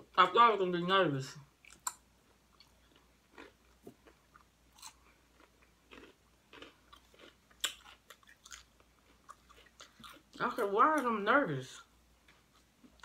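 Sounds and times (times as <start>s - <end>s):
crunchy chewing of chips: 1.6s - 11.1s.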